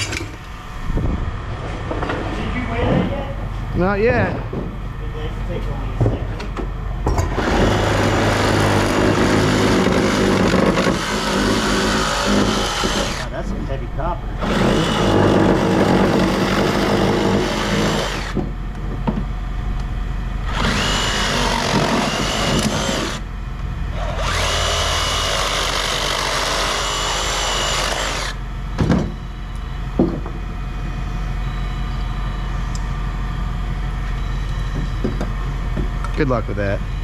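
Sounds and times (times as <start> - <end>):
power tool whining: 7.1 - 13.4, 14.4 - 18.5, 20.4 - 23.3, 23.9 - 28.5.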